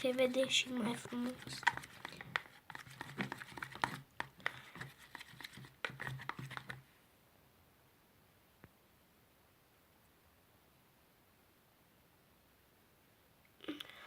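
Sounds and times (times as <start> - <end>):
hands clicking tapping and crinkling: 0.0 - 6.9.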